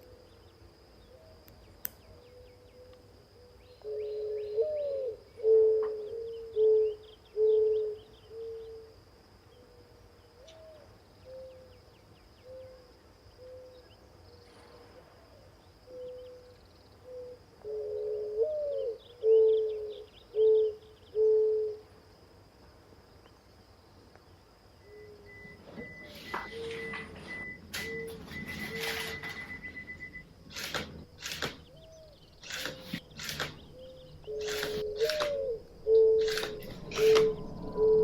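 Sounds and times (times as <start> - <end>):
dove cooing: 2.2 - 8.9, 15.9 - 21.8, 24.9 - 38.0
small birds chirping: 24.2 - 38.0.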